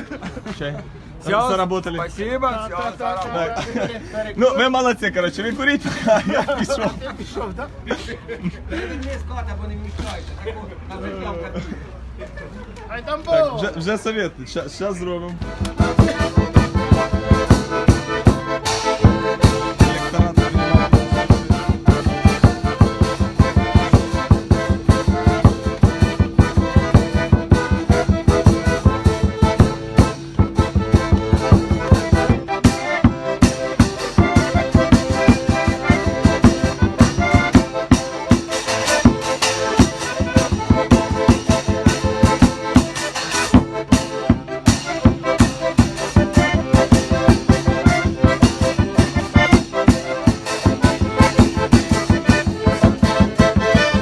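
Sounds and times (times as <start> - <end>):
accordion playing lively tune: 15.3 - 54.0.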